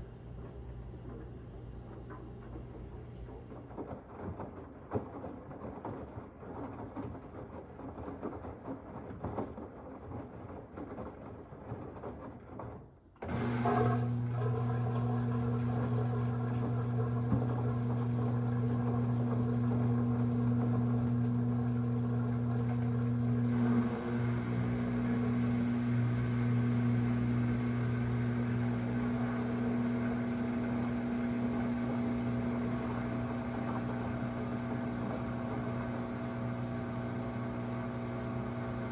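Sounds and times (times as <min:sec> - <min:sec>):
washing machine rumbling: 0:00.0 - 0:38.9.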